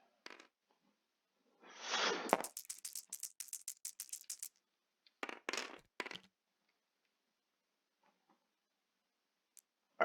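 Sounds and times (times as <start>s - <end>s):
dice clattering on a table: 0.2s - 0.5s, 2.3s - 4.6s, 5.2s - 6.3s
dice shaken: 2.3s - 4.6s, 5.2s - 6.3s.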